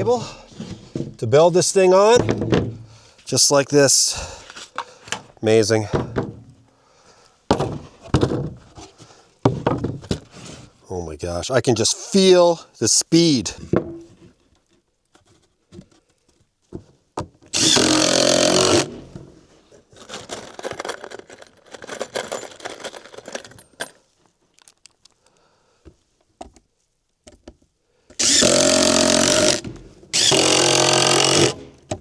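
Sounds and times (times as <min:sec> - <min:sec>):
lumber knocking and rustling: 0:00.5 - 0:01.3, 0:02.1 - 0:02.9, 0:05.8 - 0:06.6, 0:07.5 - 0:10.3, 0:13.7 - 0:17.5
cordless power tool running: 0:17.6 - 0:19.0, 0:28.2 - 0:31.7.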